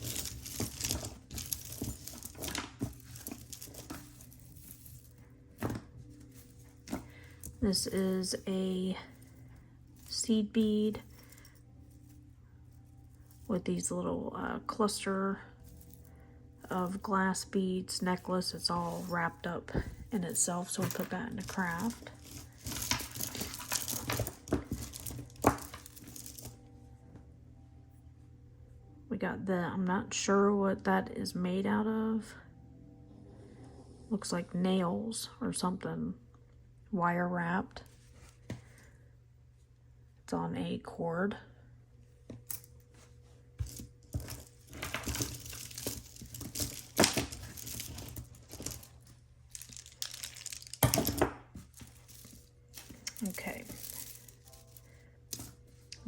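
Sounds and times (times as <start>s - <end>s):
wrapping rustling and crinkling: 0.0s - 13.6s, 18.0s - 26.6s, 42.4s - 56.0s.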